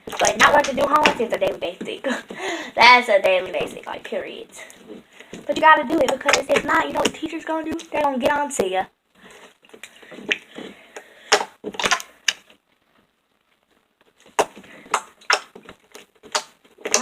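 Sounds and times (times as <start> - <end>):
slime clicking and popping: 11.3 - 12.5, 14.4 - 17.0.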